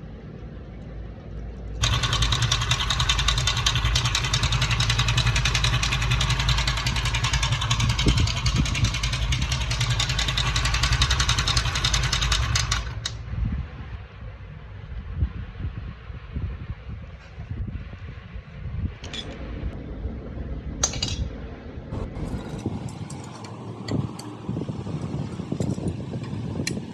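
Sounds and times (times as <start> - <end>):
fast metallic rattle: 1.8 - 13.2
motorcycle engine idling: 1.8 - 13.2.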